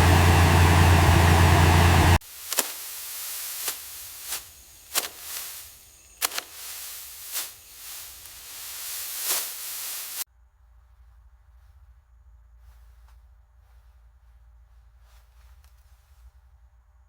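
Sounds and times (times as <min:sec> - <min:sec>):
steady hiss: 0:00.0 - 0:10.3.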